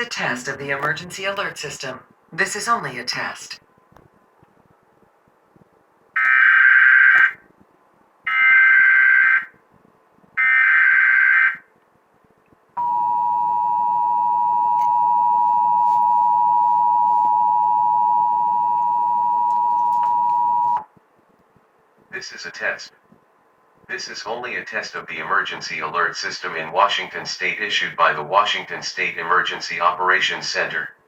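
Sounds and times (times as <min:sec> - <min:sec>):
two-tone attention signal: 0:12.8 - 0:20.8.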